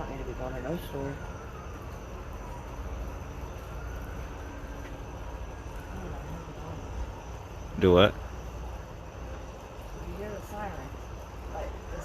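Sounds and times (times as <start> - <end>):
distant siren wailing: 0.0 - 12.0.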